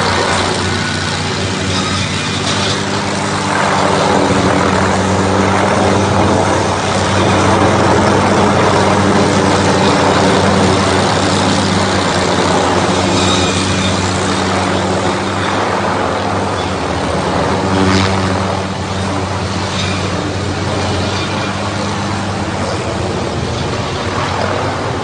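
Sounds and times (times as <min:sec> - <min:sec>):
tree-cutting machine engine: 0:00.0 - 0:25.0.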